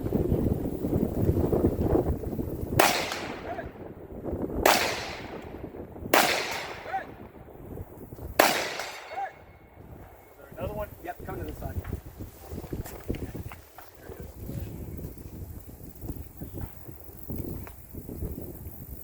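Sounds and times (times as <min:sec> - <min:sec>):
bullet pinging steel target: 0:02.8 - 0:03.6, 0:04.6 - 0:05.6, 0:06.2 - 0:07.0, 0:08.4 - 0:09.4
rifle shots: 0:02.8 - 0:03.6, 0:04.6 - 0:07.0, 0:08.4 - 0:09.4.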